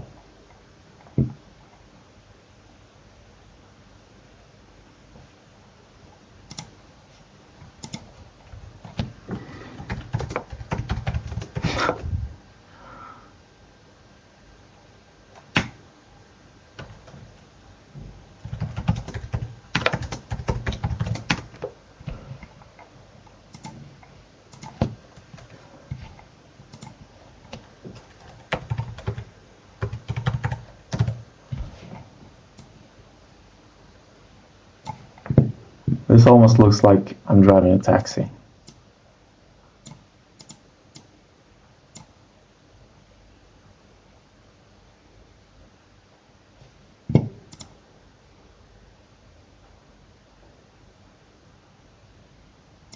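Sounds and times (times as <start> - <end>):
keyboard typing: 6.5 - 6.8, 7.6 - 8.2, 9.7 - 11.7, 18.4 - 21.7, 23.5 - 31.2, 39.8 - 41.1, 47.2 - 47.8.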